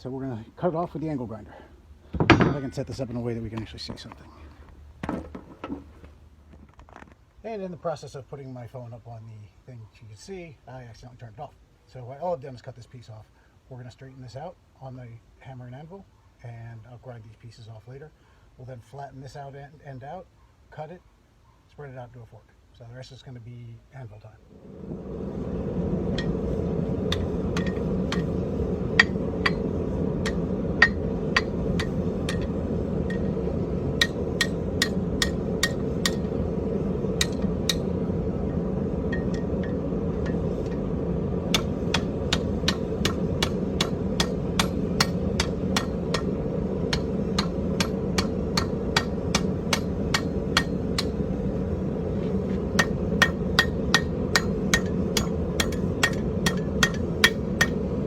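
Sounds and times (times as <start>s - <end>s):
low rumble: 24.5s - 58.0s
hammer striking iron on anvil: 26.1s - 26.4s, 27.1s - 33.4s, 34.0s - 36.4s, 37.2s - 38.0s, 39.1s - 40.8s, 41.5s - 51.2s, 52.7s - 57.8s.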